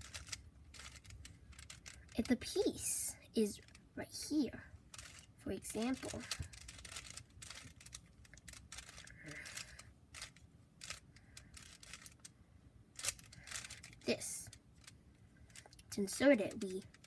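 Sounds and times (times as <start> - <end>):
puzzle cube clicking: 0.0 - 2.4, 4.9 - 12.3, 13.0 - 15.9.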